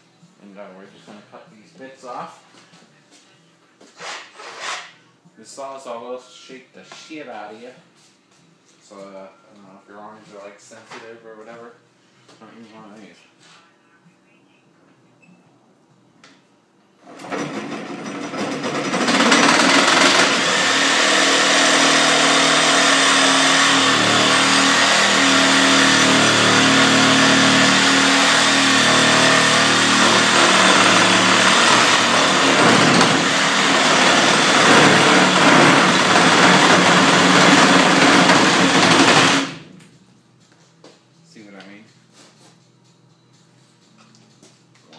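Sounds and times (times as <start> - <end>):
reciprocating saw cutting wood: 19.0 - 39.6.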